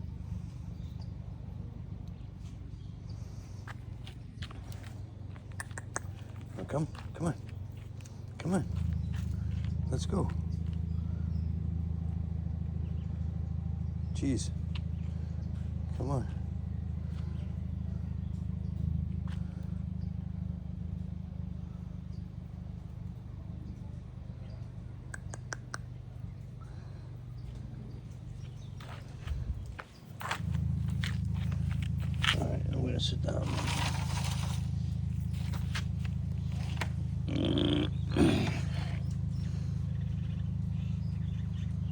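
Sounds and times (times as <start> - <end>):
low mechanical hum: 0.0 - 41.9
short vocal sounds: 37.2 - 39.2.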